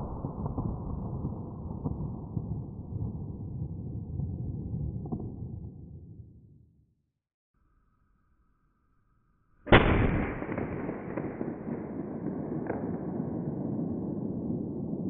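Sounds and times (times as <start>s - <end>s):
gunshot: 9.7s - 14.8s.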